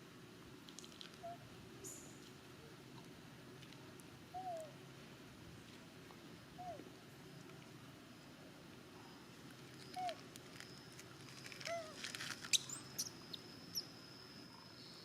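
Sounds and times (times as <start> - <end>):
faint high whine: 4.3 - 15.0
clicks and rustles: 9.4 - 12.7.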